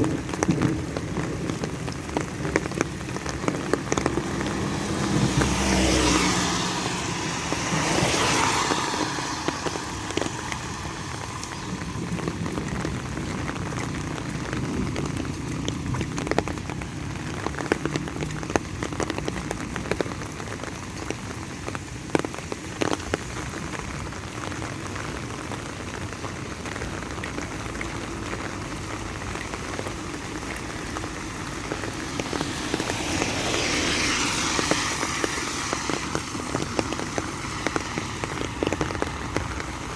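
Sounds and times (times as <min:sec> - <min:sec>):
sharp raindrop ticks: 0:00.0 - 0:39.9
steady rain falling: 0:00.0 - 0:39.9.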